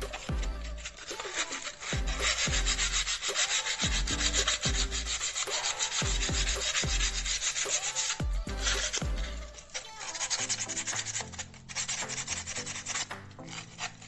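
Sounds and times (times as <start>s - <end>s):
background music with low beat: 0.0s - 9.8s
sandpaper rubbing on metal: 0.0s - 14.0s.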